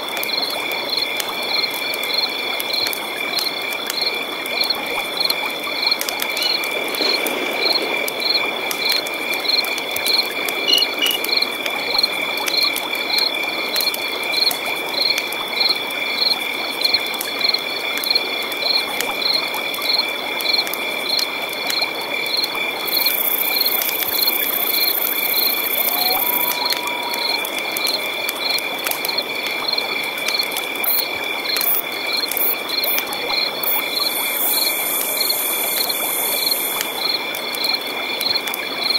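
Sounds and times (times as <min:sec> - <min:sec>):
high-pitched insect trills: 0:10.2 - 0:11.5, 0:22.9 - 0:29.4, 0:30.3 - 0:37.7
frog chirping call: 0:10.6 - 0:11.3, 0:24.4 - 0:28.2.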